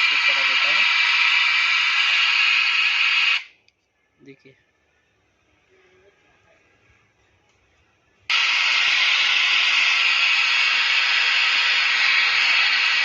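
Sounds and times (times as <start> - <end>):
loudspeaker hiss: 0.0 - 3.4, 8.3 - 13.0.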